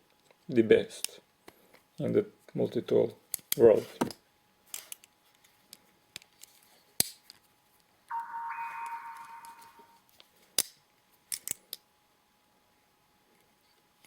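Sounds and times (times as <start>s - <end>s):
ringing tone: 8.1s - 10.0s.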